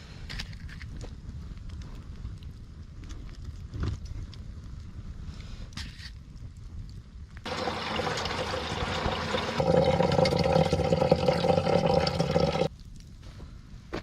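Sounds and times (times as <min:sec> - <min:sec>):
water pouring: 0:07.5 - 0:12.7.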